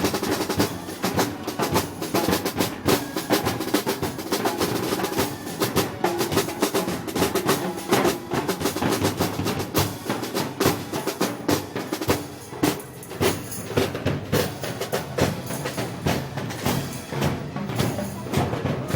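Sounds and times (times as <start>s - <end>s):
snare drum rolls: 0.0s - 18.9s.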